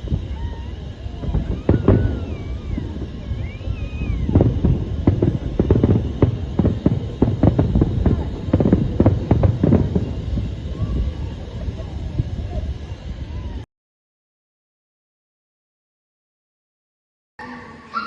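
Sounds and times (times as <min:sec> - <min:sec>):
fireworks bangs and crackles: 0:00.0 - 0:13.6.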